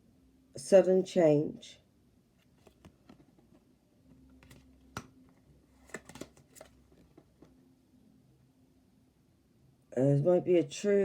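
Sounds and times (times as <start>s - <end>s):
cards clicking and tapping: 2.6s - 3.6s, 4.3s - 7.5s.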